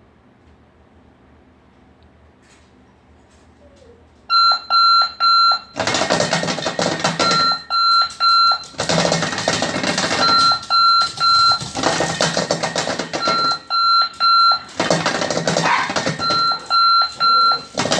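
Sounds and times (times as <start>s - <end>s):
alarm clock high beeps: 4.3s - 17.9s
bed shaker buzzing rattle: 5.8s - 13.6s.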